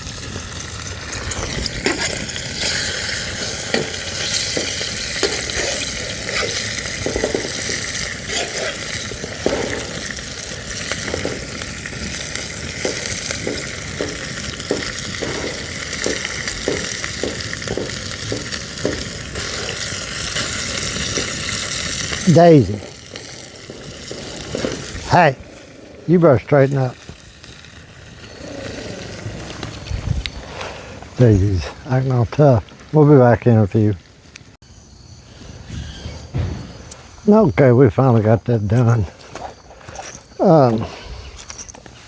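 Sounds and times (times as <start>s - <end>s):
patties sizzling in a skillet: 0.0s - 29.7s
knocks and scrapes: 1.3s - 21.4s, 35.2s - 37.2s.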